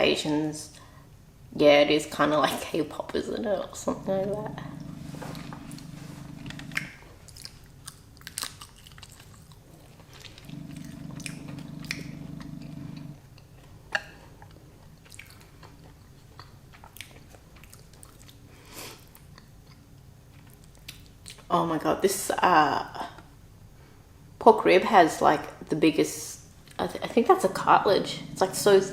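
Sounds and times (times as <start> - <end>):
low steady hum: 0.0 - 8.2, 9.2 - 16.5, 25.7 - 28.9
person chewing food: 4.8 - 21.4.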